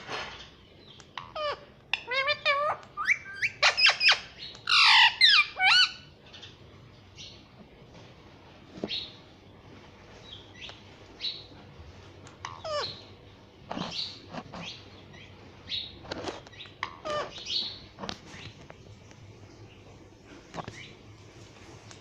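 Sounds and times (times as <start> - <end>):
parrot chirping: 0.9 - 6.5, 12.4 - 18.4.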